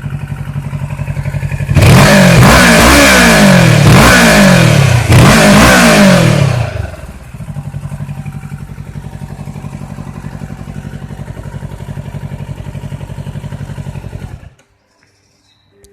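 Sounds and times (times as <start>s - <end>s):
motorcycle engine idling: 0.0s - 2.8s, 6.3s - 14.6s.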